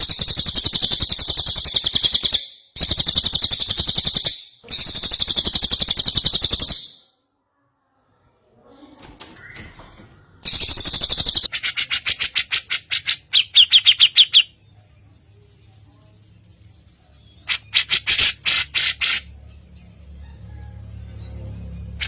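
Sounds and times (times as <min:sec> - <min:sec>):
songbird rapid chattering calls: 0:10.5 - 0:14.5, 0:17.4 - 0:19.3.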